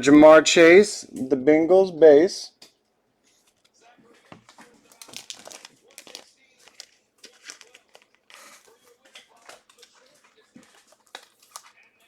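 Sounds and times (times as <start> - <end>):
trading cards rustling and clicking: 3.3 - 12.0.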